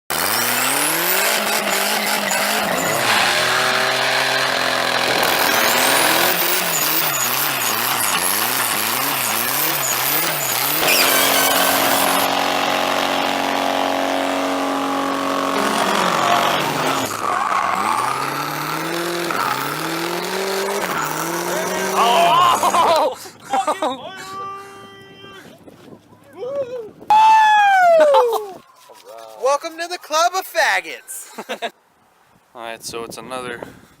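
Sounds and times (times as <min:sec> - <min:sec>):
tire squeal: 0:00.1 - 0:12.4, 0:15.4 - 0:22.8
car engine revving hard: 0:00.1 - 0:22.9.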